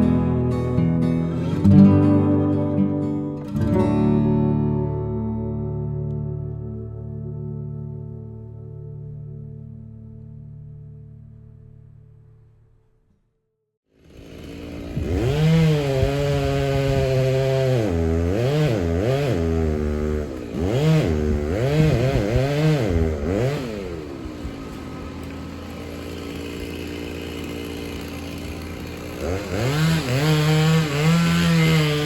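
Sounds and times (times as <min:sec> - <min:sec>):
chainsaw running at high revs: 0:13.9 - 0:32.0.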